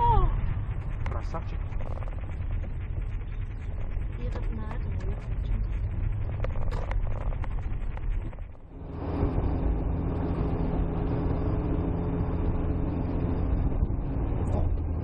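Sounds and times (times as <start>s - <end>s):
car engine and tyre noise: 0.0s - 15.0s
faint constant hum: 0.0s - 15.0s.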